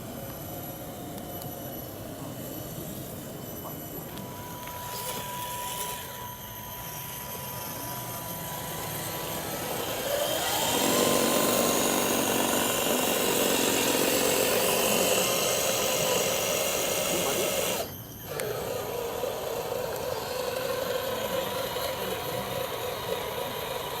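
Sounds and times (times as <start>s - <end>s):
electric motor and gearbox whining: 0.0s - 24.0s.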